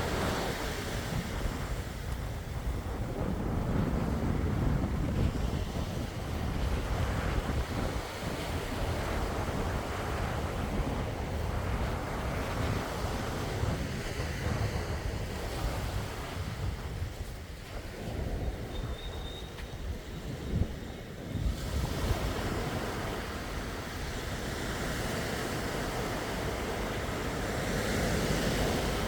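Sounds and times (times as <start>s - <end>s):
sea waves washing in: 0.0s - 18.7s, 19.5s - 29.0s
wind on microphone: 0.0s - 29.0s.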